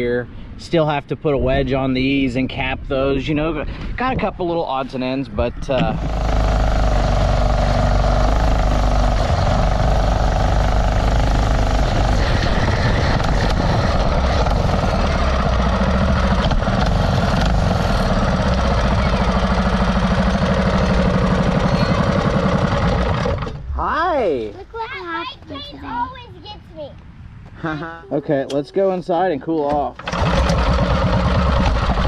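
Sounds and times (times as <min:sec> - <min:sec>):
small engine running: 0:05.8 - 0:23.6, 0:30.0 - 0:32.0.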